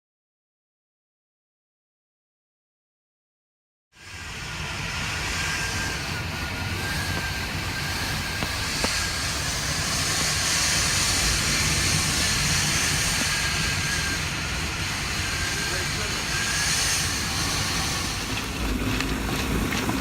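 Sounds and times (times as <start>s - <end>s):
faint wind whistle: 4.0s - 20.0s
strong wind buffeting microphone: 4.1s - 20.0s.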